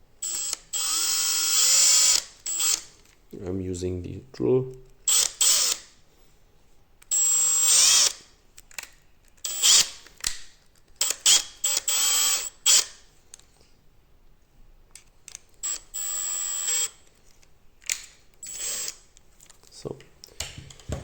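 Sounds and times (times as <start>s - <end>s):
electric drill whining: 0.2s - 2.8s, 5.1s - 5.8s, 7.1s - 8.1s, 11.2s - 12.8s, 15.6s - 17.0s, 18.4s - 19.0s.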